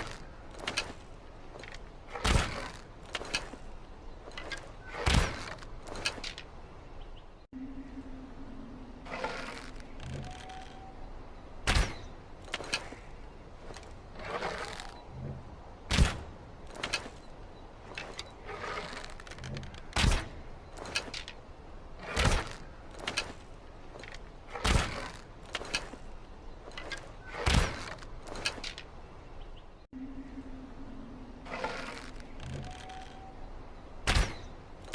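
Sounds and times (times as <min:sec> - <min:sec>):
rustle of bow draw: 0:12.5 - 0:15.0.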